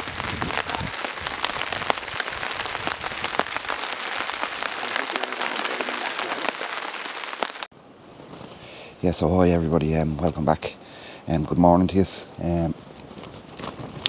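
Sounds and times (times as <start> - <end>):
heavy rain falling: 0.0 - 7.7.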